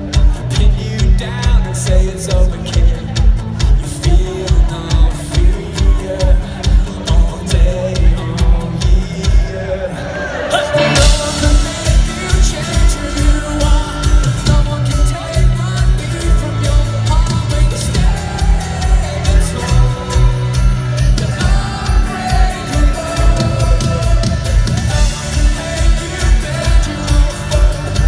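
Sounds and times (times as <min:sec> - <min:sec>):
live rock band playing: 0:00.0 - 0:09.8, 0:10.4 - 0:28.0.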